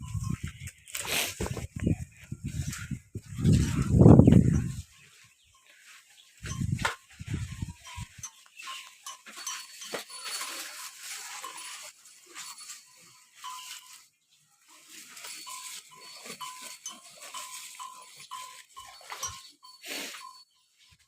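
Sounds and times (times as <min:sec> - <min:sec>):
farm livestock calling: 0:14.6 - 0:20.6.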